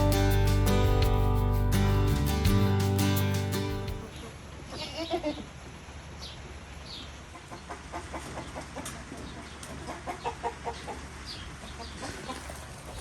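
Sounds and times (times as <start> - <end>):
chickens clucking: 7.3 - 13.0.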